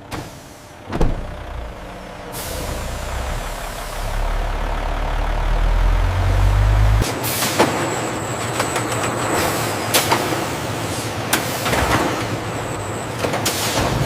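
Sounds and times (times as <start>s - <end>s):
truck engine rumbling: 0.0s - 8.6s.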